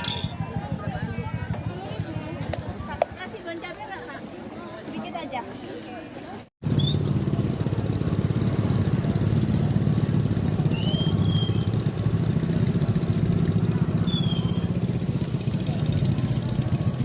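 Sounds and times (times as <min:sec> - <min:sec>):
small engine idling: 0:00.0 - 0:02.2, 0:06.6 - 0:17.0.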